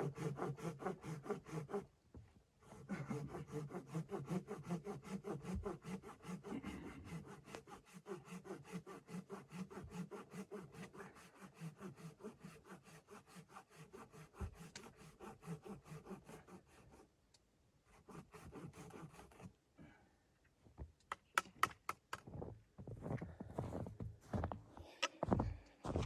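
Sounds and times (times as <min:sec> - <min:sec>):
hand saw cutting wood: 0:00.0 - 0:01.9, 0:02.6 - 0:17.1, 0:17.9 - 0:19.6.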